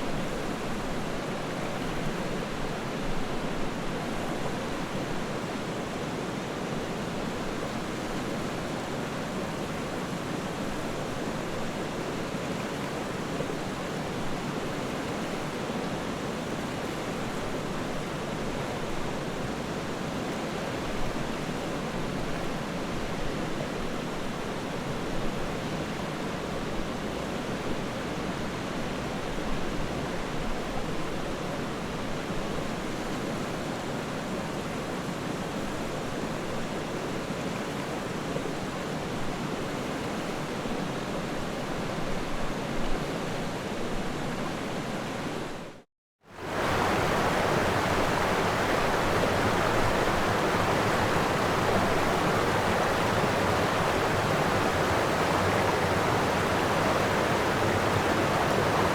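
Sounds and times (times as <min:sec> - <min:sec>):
floodwater rushing: 0:46.3 - 0:58.9.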